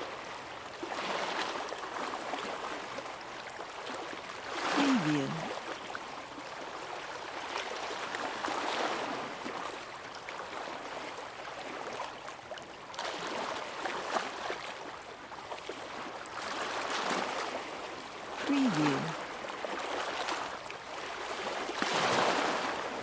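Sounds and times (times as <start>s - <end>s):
sea water lapping and splashing: 0.0s - 23.0s
small waves washing in: 15.6s - 23.0s.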